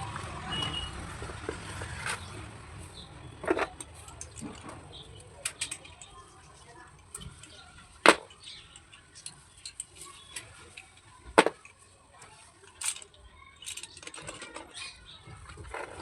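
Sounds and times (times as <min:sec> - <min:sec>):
slate pencils clicking and tapping: 0:03.2 - 0:16.0.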